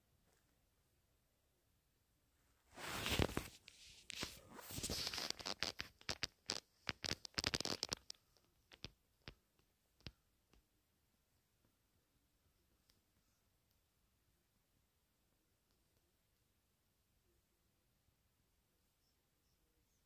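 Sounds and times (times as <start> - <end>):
hands rustling and patting flour: 2.7 - 6.5.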